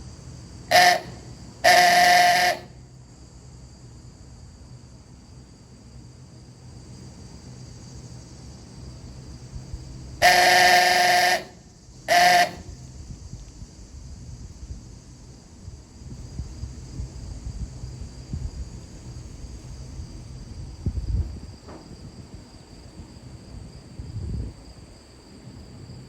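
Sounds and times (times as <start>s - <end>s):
ooga horn blasts: 0.7s - 2.8s, 10.2s - 12.8s.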